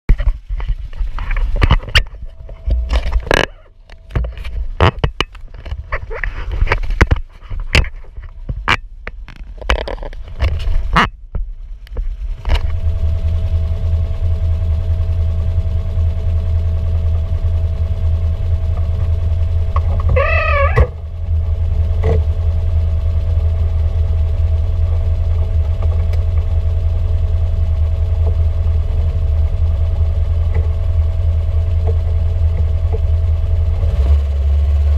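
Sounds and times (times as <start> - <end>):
engine running: 0.1 - 34.9
suspension knocking and clunking: 14.4 - 34.9.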